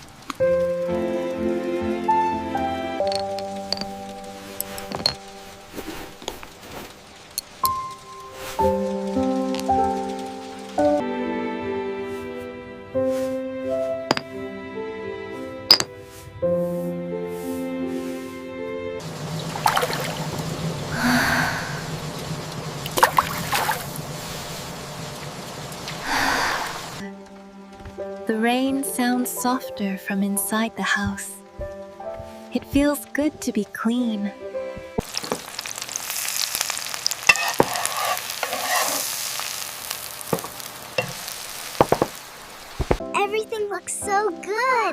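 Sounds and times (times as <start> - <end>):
food sizzling in frying pan: 0.0 - 11.0, 19.0 - 27.0, 35.0 - 43.0
water running and splashing: 0.0 - 11.0, 19.0 - 27.0, 35.0 - 43.0
soft music: 0.0 - 41.8, 42.9 - 44.9.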